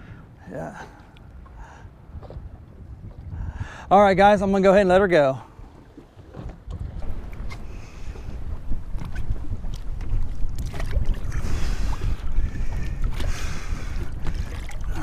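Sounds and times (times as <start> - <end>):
wind buffeting microphone: 0.0 - 15.0
water splashing: 5.8 - 15.0.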